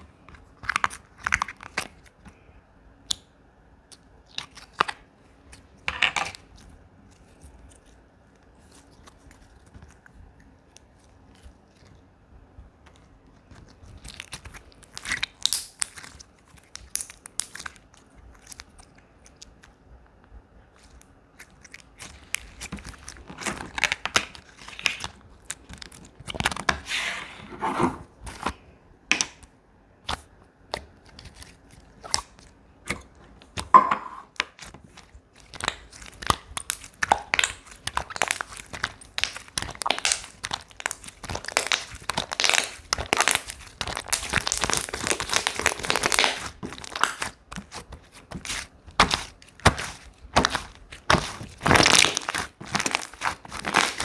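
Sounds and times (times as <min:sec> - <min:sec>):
slime crackling and popping: 0:12.8 - 0:19.8, 0:20.7 - 0:26.9, 0:30.1 - 0:54.0.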